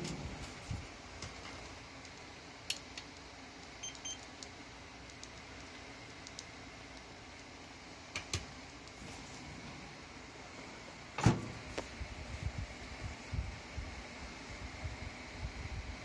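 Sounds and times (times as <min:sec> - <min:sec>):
steam oven fan hum: 0:00.0 - 0:16.0
small clicks: 0:05.1 - 0:07.1.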